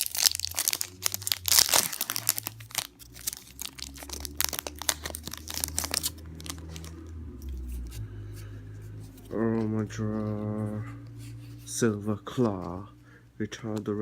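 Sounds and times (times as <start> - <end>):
foil wrapper tearing and crinkling: 0.0 - 7.0.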